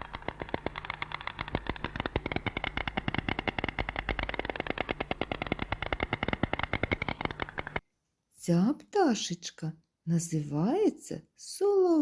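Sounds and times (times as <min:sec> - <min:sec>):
stork clattering its bill: 0:00.0 - 0:07.8.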